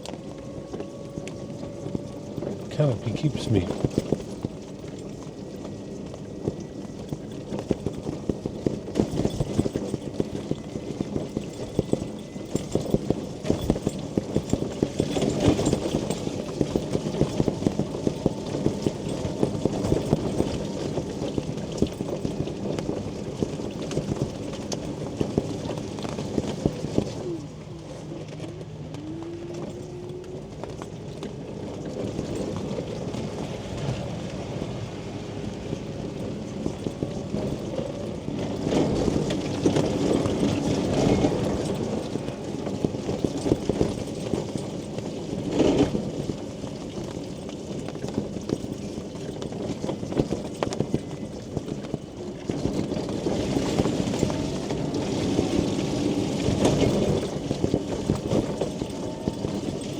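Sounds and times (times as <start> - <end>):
rain pattering on canopy: 0.0 - 59.9.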